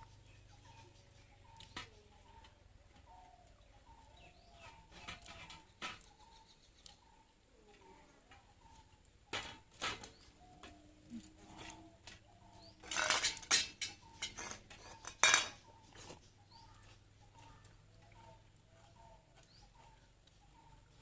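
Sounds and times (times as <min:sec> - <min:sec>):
faint birds chirping: 0:00.0 - 0:21.0
utensils clinking on plate: 0:12.8 - 0:15.6.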